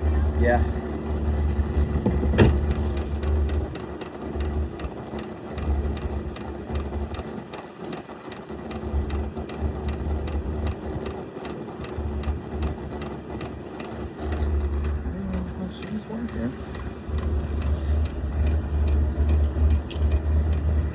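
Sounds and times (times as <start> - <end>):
low rumbles: 0.0 - 7.3, 11.9 - 20.9
fuel pump ticking: 0.0 - 20.9
heater blower motor hum: 0.0 - 20.9.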